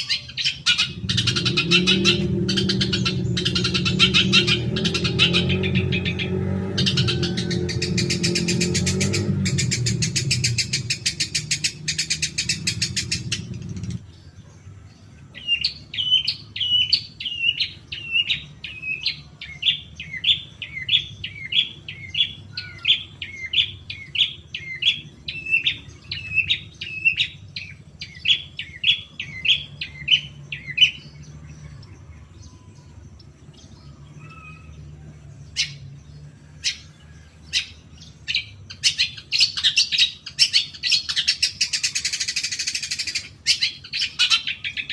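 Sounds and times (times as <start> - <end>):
shrike singing: 0.0 - 14.4
bird harsh chatter: 0.0 - 14.6, 36.7 - 44.9.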